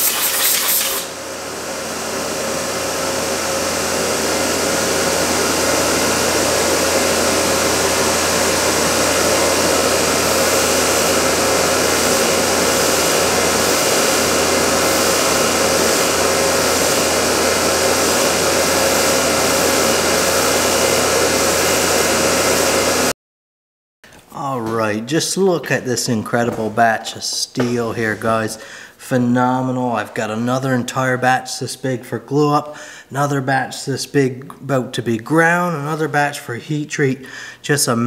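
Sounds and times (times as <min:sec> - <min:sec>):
workshop machine whirring: 0:00.0 - 0:23.1.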